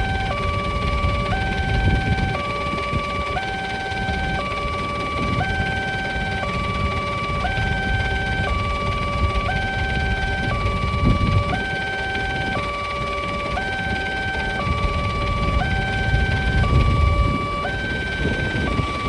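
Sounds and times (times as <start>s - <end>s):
low background rumble: 0.0s - 19.0s
two-tone level crossing alarm: 0.0s - 19.0s.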